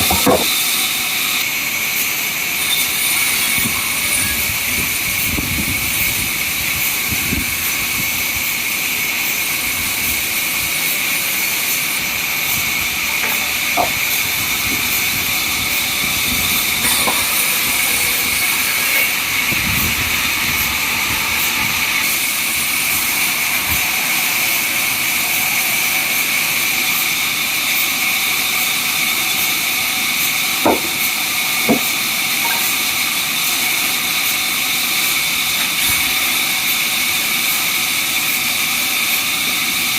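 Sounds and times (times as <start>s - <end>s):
sharp knocks: 0.0s - 0.6s, 13.2s - 14.0s, 30.6s - 31.0s, 31.7s - 32.7s
sawmill machinery whining: 0.0s - 39.9s.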